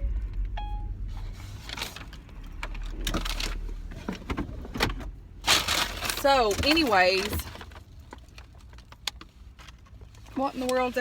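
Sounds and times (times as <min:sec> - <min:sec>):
short beep: 0:00.0 - 0:01.0
rustling and handling noise: 0:01.0 - 0:11.0.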